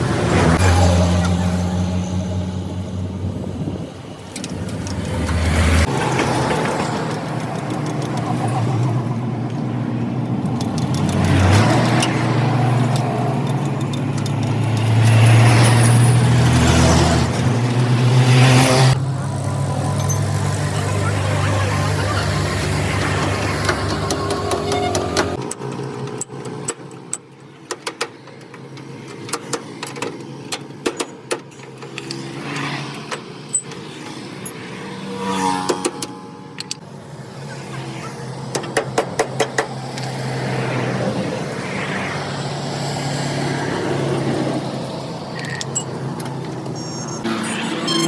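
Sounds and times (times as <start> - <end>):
vehicle engine running: 0.0 - 25.4
sharp clicks and knocks: 4.2 - 9.6, 10.2 - 15.7, 23.0 - 34.6, 38.5 - 40.2.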